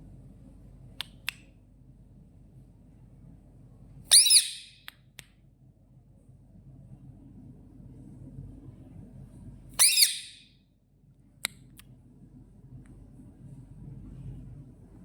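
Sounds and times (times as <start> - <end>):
parrot squawking: 4.1 - 4.8, 9.8 - 10.4.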